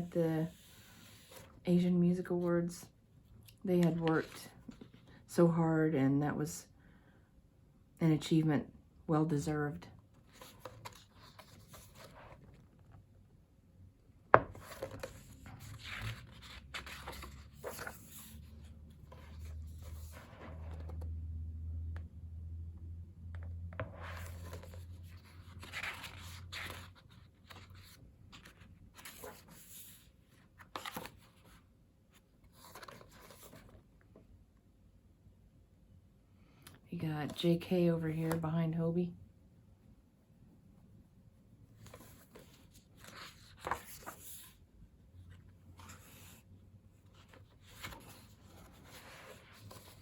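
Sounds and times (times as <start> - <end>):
paper pages rustling: 10.2 - 13.0, 14.4 - 21.1, 23.8 - 31.6, 32.4 - 33.8, 41.8 - 44.6, 45.2 - 50.0.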